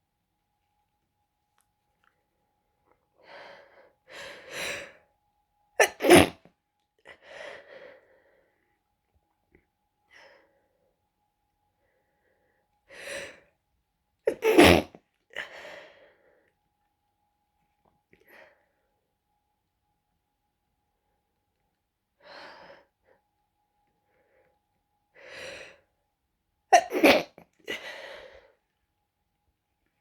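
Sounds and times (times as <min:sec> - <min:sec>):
person stifling sneezes: 0:05.8 - 0:06.4, 0:14.3 - 0:14.9, 0:26.8 - 0:27.4.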